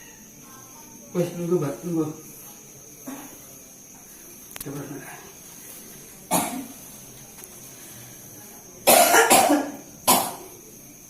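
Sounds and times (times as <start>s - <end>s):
person coughing: 8.9s - 10.4s.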